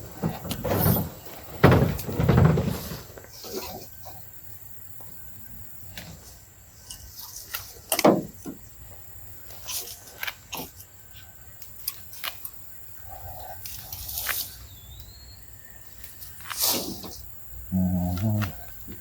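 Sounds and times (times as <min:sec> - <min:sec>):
heavy thump: 0:00.2 - 0:03.1
leaves rustling: 0:05.2 - 0:19.0.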